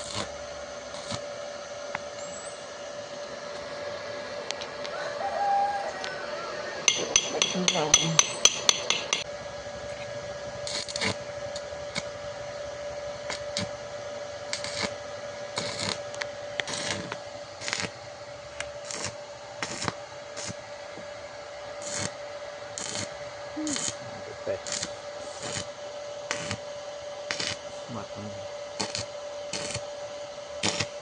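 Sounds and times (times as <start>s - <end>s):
hammer clanging on metal: 6.9s - 9.3s.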